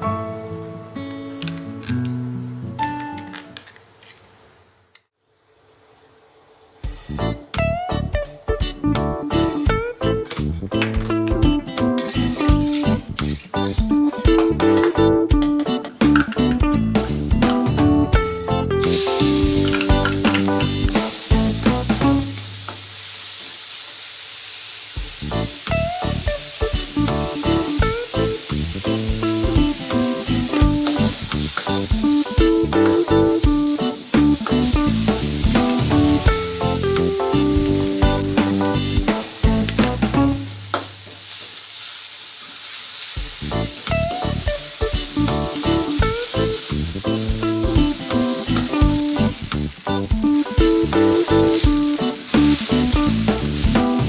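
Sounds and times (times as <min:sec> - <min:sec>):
plucked guitar music: 0:00.0 - 0:03.3, 0:07.2 - 0:22.6, 0:25.2 - 0:41.1, 0:43.3 - 0:54.0
food sizzling in a hot pan: 0:11.7 - 0:14.9, 0:18.8 - 0:54.0.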